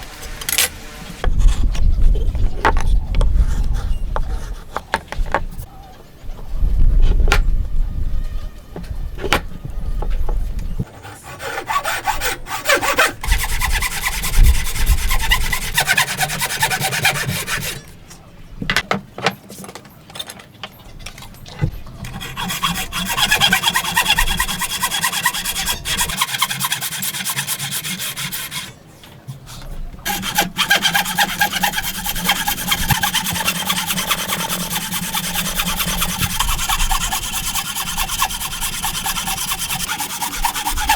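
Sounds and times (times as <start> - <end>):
hand saw cutting wood: 10.9 - 17.9, 22.0 - 28.8, 30.1 - 40.9.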